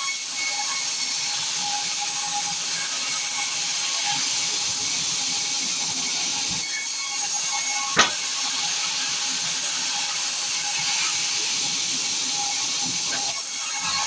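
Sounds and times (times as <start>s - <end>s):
saw cutting through log: 7.9s - 9.2s, 9.8s - 14.0s
sharp knock: 8.0s - 8.2s.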